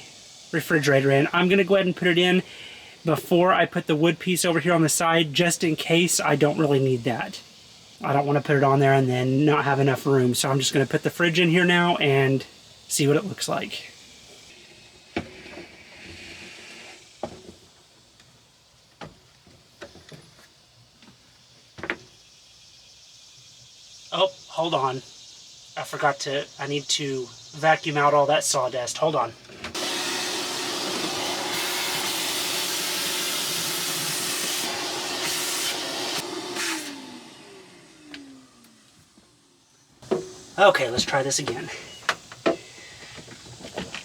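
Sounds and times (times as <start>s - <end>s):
vacuum cleaner running: 29.7s - 39.4s
motor winding down whine: 29.8s - 39.4s.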